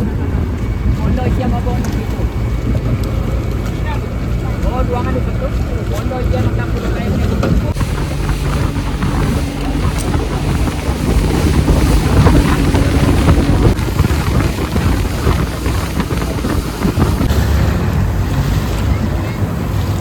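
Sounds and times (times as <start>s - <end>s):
wind buffeting microphone: 0.0s - 20.0s
rushing noise: 7.7s - 20.0s.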